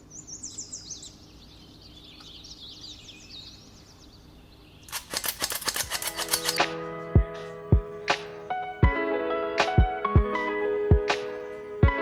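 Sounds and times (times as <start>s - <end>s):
small birds chirping: 0.0s - 9.0s
sharp clicks: 4.9s - 6.9s.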